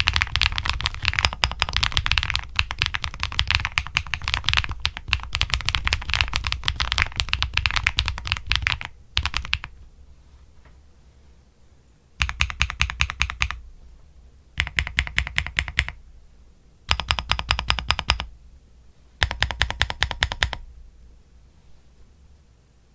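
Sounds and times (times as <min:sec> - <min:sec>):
keyboard typing: 0:00.0 - 0:09.8, 0:12.2 - 0:13.6, 0:14.6 - 0:16.0, 0:16.9 - 0:18.3, 0:19.2 - 0:20.7.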